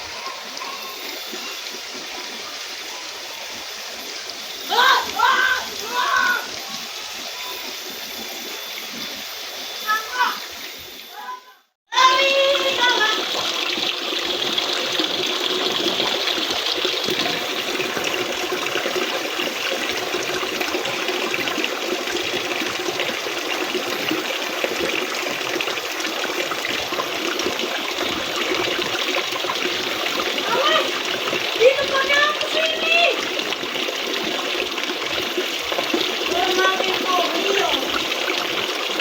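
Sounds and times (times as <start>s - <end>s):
stream water rushing: 12.0s - 39.0s.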